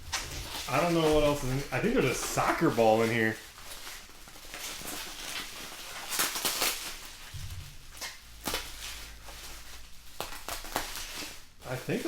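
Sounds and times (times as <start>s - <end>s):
packaging rustling and crinkling: 0.0s - 12.0s
dull thump: 7.3s - 10.4s
sharp knocks: 7.4s - 9.0s.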